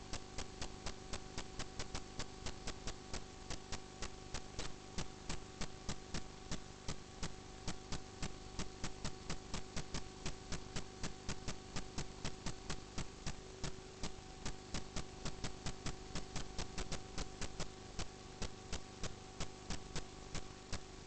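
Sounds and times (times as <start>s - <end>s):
electrical hum: 0.0s - 21.0s.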